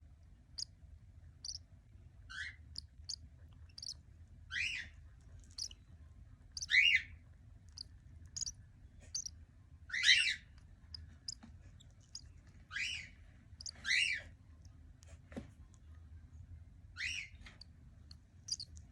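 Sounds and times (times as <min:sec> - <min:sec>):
cockatiel chirping and calling: 0:18.5 - 0:18.7.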